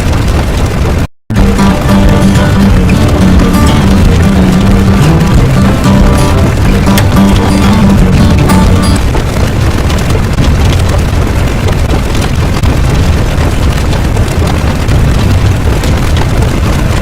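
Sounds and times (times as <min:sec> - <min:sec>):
loud bass rumbling: 0:00.0 - 0:17.0
held musical chord: 0:01.3 - 0:09.0.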